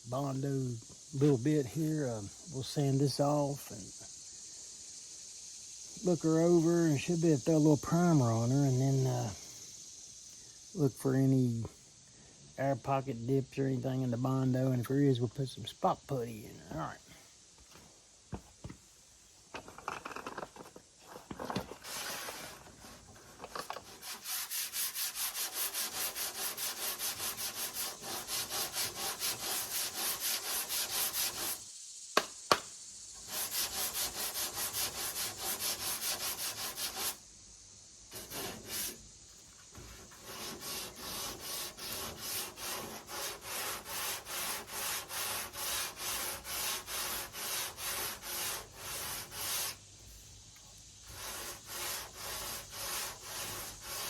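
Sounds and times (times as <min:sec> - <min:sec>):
sandpaper rasping on body filler: 0:23.8 - 0:31.7, 0:33.2 - 0:37.2, 0:38.1 - 0:39.0, 0:39.7 - 0:49.8, 0:51.0 - 0:54.0.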